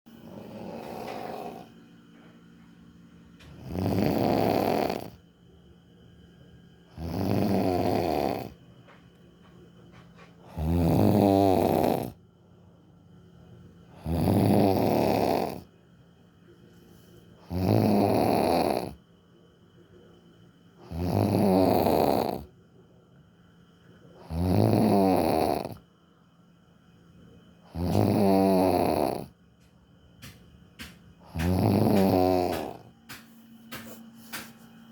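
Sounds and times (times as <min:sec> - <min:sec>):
loud snoring: 0:00.1 - 0:01.8, 0:03.4 - 0:05.2, 0:06.9 - 0:08.6, 0:10.4 - 0:12.2, 0:13.9 - 0:15.7, 0:17.4 - 0:19.0, 0:20.8 - 0:22.5, 0:24.2 - 0:25.8, 0:27.7 - 0:29.3, 0:31.2 - 0:32.9.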